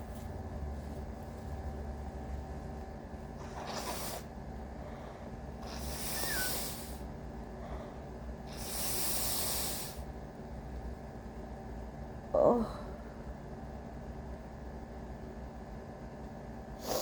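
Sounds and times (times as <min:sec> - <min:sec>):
person breathing heavily: 0:03.6 - 0:10.1.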